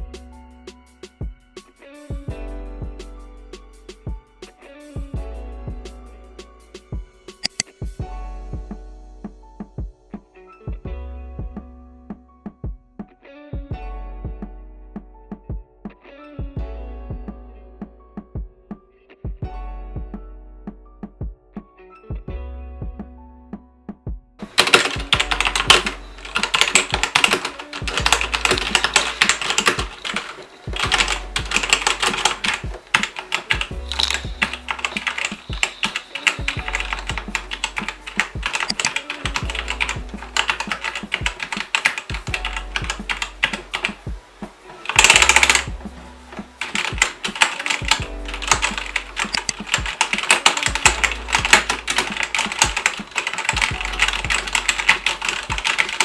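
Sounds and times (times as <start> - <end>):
mechanical keyboard typing: 7.4 - 7.6, 24.4 - 56.0.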